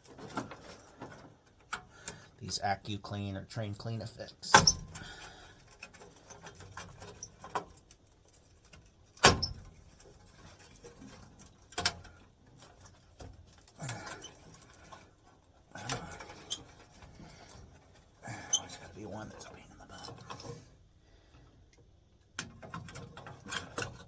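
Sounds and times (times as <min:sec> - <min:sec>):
clicks and knocks of hand work: 0:04.5 - 0:18.8, 0:21.7 - 0:24.0.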